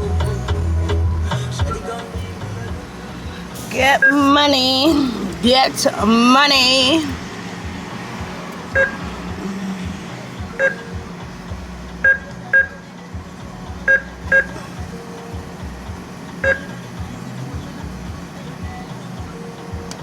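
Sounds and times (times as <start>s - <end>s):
keypad beeps: 8.7s - 9.0s, 10.6s - 11.0s, 16.4s - 16.8s.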